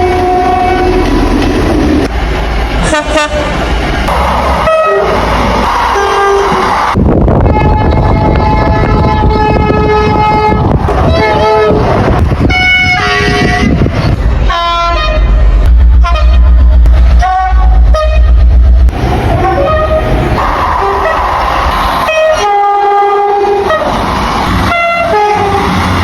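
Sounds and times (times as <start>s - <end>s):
train horn blasts: 0.0s - 1.2s, 2.8s - 3.5s, 4.6s - 5.2s, 5.9s - 6.7s, 7.4s - 18.5s, 19.4s - 21.3s, 22.0s - 24.0s, 24.7s - 25.9s
heavy low rumble: 0.0s - 22.5s.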